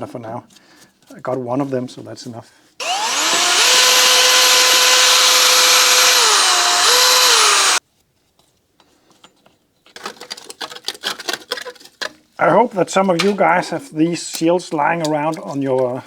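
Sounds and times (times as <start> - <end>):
power drill whining: 2.8 - 7.8.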